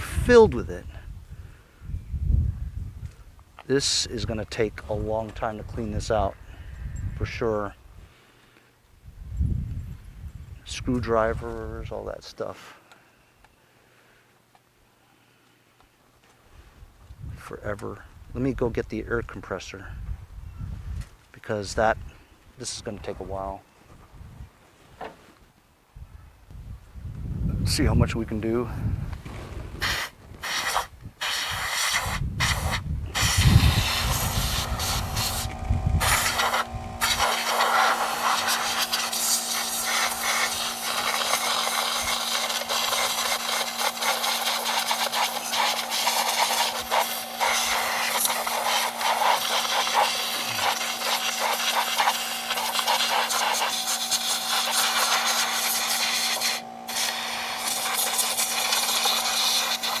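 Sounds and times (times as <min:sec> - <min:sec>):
air compressor motor hum: 0:28.8 - 1:00.0
compressed air hissing: 0:29.3 - 1:00.0.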